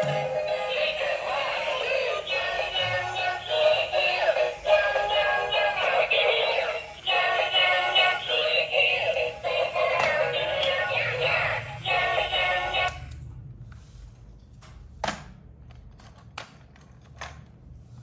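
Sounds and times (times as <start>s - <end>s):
music with synthesized singing voice: 0.0s - 13.0s.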